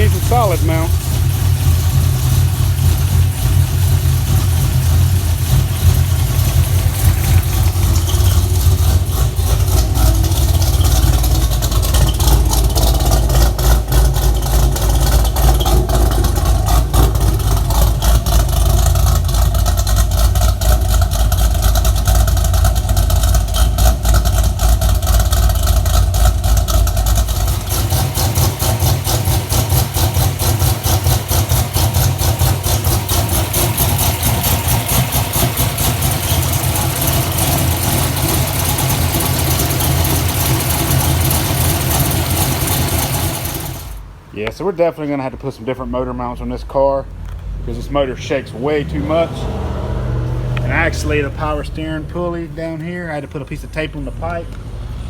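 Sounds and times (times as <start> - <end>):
engine idling with deep rumble: 0.0 - 49.6, 50.2 - 55.0.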